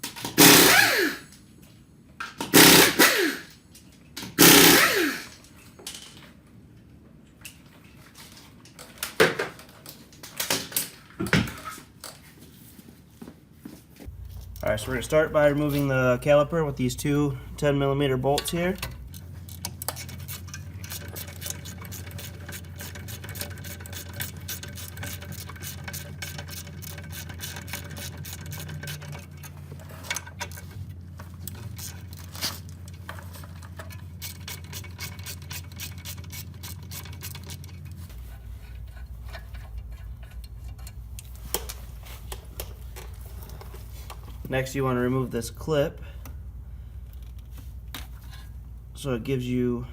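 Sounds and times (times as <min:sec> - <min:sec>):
ratchet wrench clicking: 0:04.4 - 0:05.3, 0:18.4 - 0:29.5, 0:33.8 - 0:37.9
steady low hum: 0:14.0 - 0:49.9.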